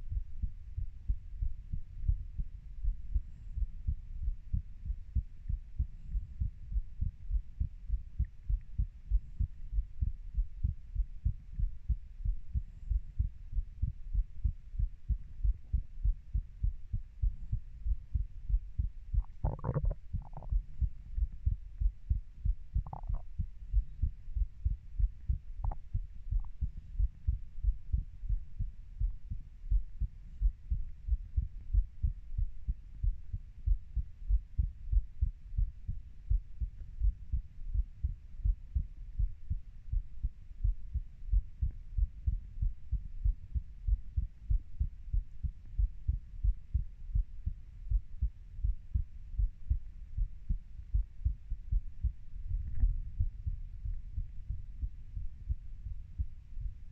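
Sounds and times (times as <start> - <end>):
heartbeat thuds: 0.0 - 56.9.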